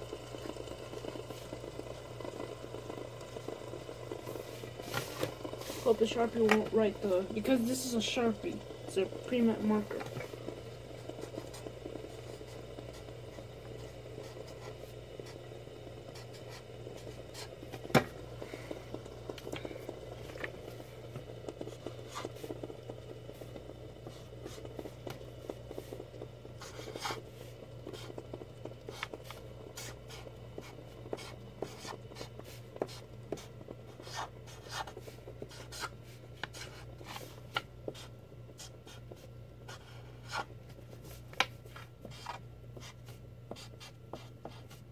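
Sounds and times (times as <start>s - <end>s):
steady low hum: 0.0s - 44.9s
marker scratching on paper: 26.6s - 27.2s, 29.8s - 35.9s, 39.7s - 40.5s, 42.1s - 44.8s.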